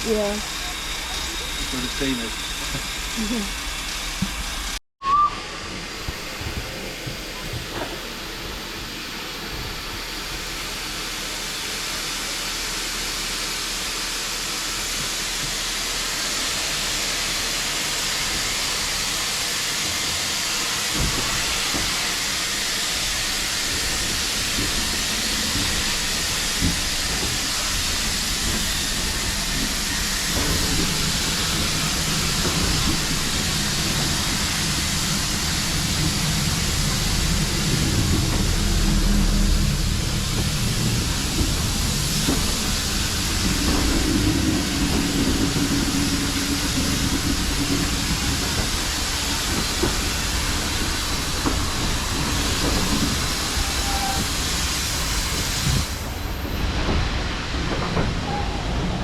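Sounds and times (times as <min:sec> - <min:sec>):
locomotive steam hissing: 0:00.0 - 0:59.0
low rumble: 0:27.4 - 0:48.8.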